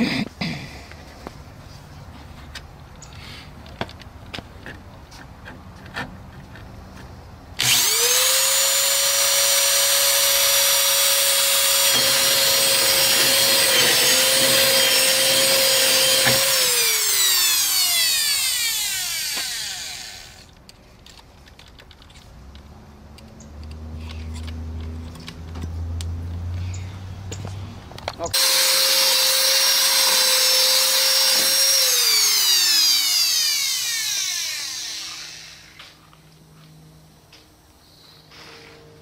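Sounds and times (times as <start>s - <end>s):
electric power tool running: 7.6s - 20.5s, 28.3s - 35.9s
power tool spinning down whine: 7.6s - 20.5s, 28.4s - 35.9s.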